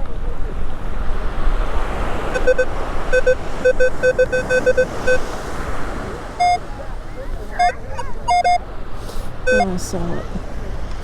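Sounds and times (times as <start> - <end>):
wind: 0.0 - 11.0
surf hiss: 0.1 - 11.0
metal detector beeping: 2.4 - 5.2, 6.4 - 6.6, 7.5 - 8.6, 9.5 - 9.7.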